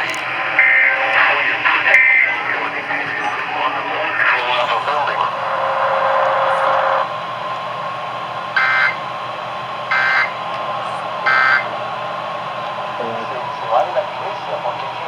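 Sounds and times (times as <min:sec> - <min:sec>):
radio hiss: 0:00.0 - 0:15.0.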